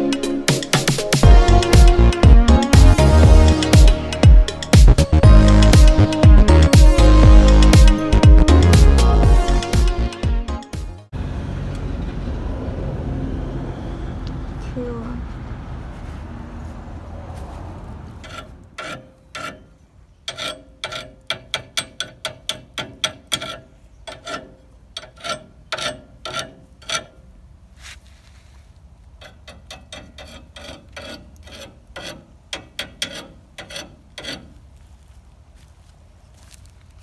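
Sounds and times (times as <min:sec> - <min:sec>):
hand tool striking metal: 0:18.2 - 0:27.2, 0:29.2 - 0:34.5.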